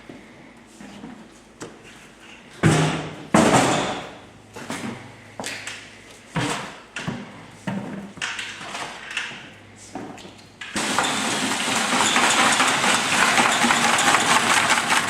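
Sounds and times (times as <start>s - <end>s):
pails and gear knocking: 10.8s - 15.0s.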